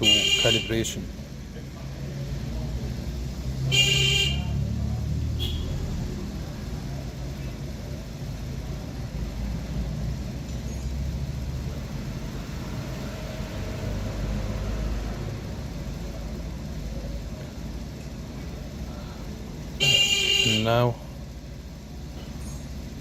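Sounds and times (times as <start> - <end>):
low vehicle rumble: 0.0 - 23.0
high-pitched horn toot: 3.7 - 4.6, 19.8 - 20.7.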